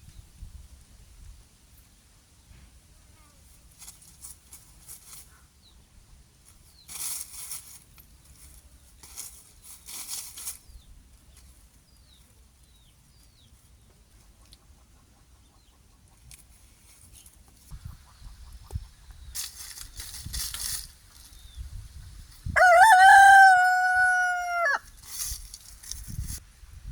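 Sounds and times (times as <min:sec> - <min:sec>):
chickens rustling: 0:03.4 - 0:05.5, 0:06.4 - 0:26.9.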